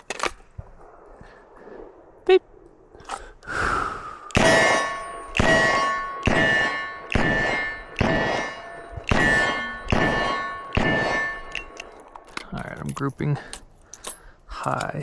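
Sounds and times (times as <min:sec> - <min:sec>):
short metallic ring: 0:04.3 - 0:13.0.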